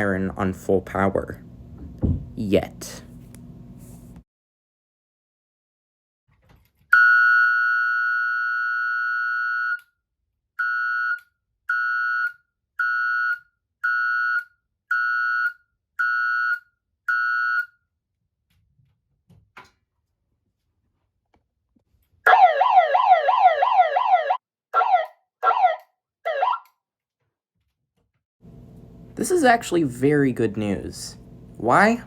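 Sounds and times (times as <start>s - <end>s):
electronic siren beeping: 7.0s - 9.8s, 10.6s - 17.7s, 22.3s - 26.7s.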